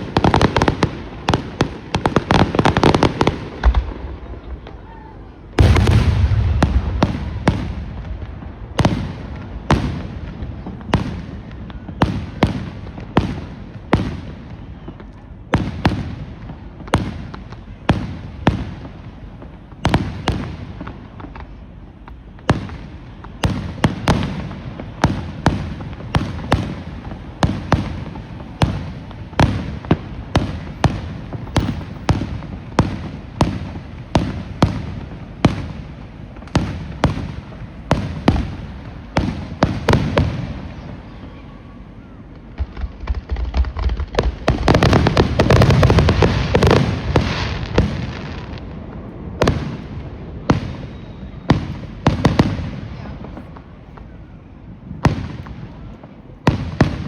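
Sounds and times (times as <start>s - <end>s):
fireworks bangs: 0.0s - 57.0s
heavy firework boom: 2.4s - 14.3s.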